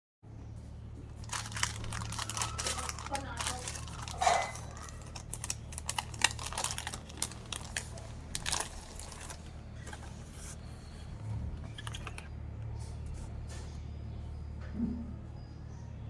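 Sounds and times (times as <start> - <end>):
steady low hum: 0.3 - 16.0
paint brushes clicking and rustling: 1.0 - 13.6.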